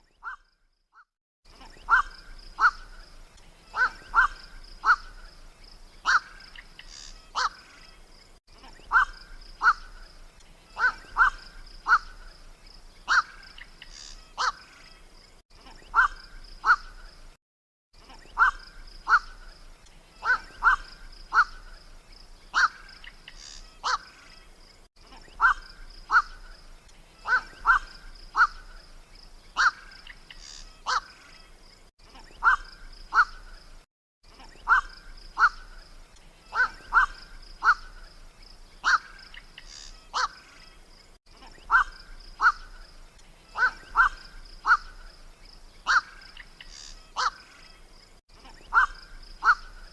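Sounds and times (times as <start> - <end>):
heron croaks: 1.8 - 2.9, 8.8 - 10.0, 10.8 - 12.2, 20.2 - 21.7, 22.5 - 24.1, 25.2 - 26.5, 27.2 - 28.7, 34.5 - 35.7, 36.5 - 38.0, 38.8 - 40.4, 41.6 - 42.8, 43.5 - 45.1, 45.8 - 47.4, 48.6 - 49.8.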